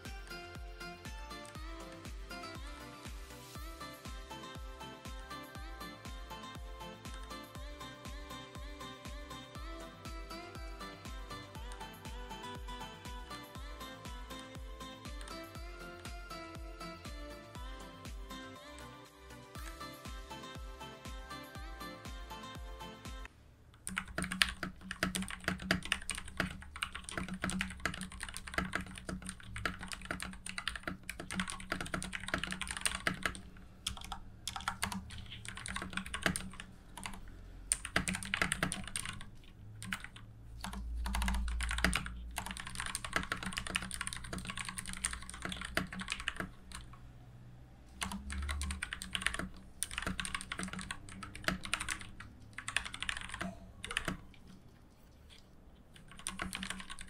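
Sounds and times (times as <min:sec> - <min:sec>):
mechanical keyboard typing: 0:23.8 - 0:47.0, 0:48.0 - 0:54.5, 0:56.0 - 0:57.0.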